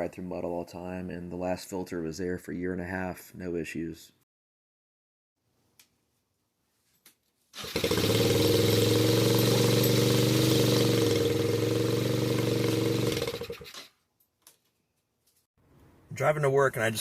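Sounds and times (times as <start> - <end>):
small engine running steadily: 7.6 - 13.8.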